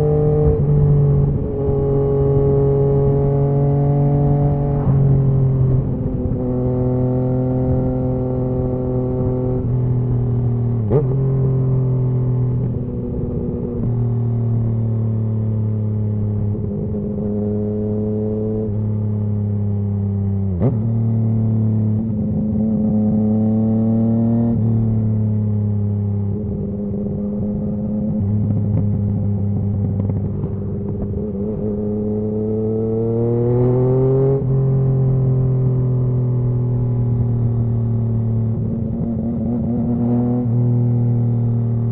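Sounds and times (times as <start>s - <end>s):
motorcycle engine revving: 0.0s - 13.9s, 19.9s - 41.9s.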